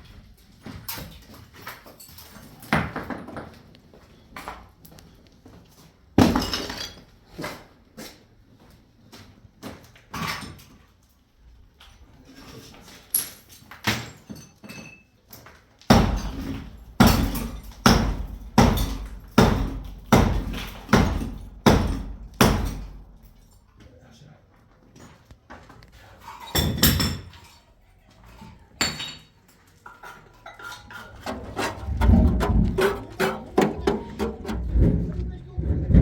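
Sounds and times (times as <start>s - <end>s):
heavy knocks: 15.9s - 23.3s, 31.2s - 36.0s.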